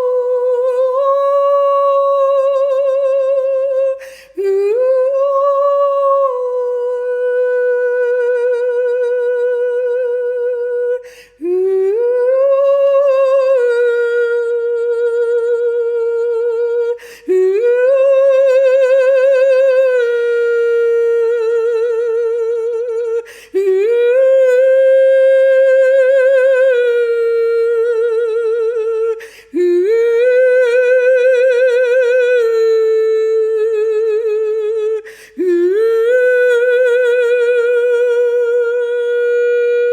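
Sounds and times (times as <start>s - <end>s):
person breathing: 4.0s - 4.4s, 11.0s - 11.4s, 17.0s - 17.3s, 23.2s - 23.6s, 29.2s - 29.6s, 35.0s - 35.4s.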